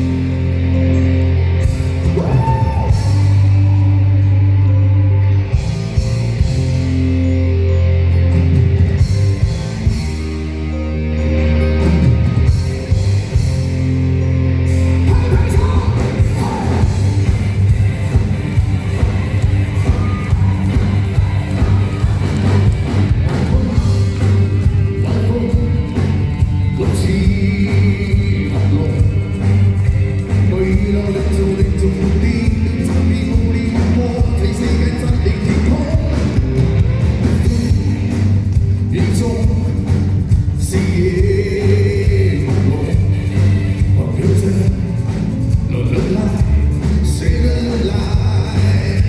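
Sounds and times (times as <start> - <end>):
heavy bass: 0.0 - 49.0
live rock band: 0.0 - 49.0
person singing: 1.9 - 4.7, 15.0 - 17.4, 19.8 - 40.0, 40.6 - 45.0, 45.6 - 49.0.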